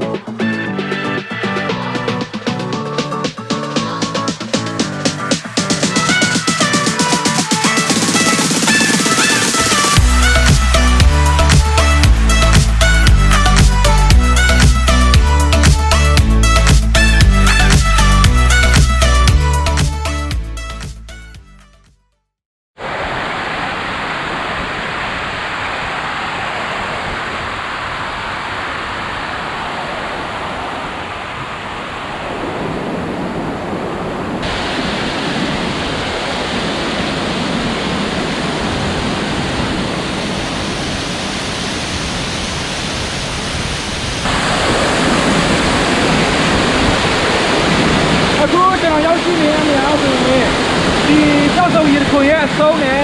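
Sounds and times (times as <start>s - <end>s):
waterfall water rushing: 4.8s - 14.6s, 22.8s - 53.0s.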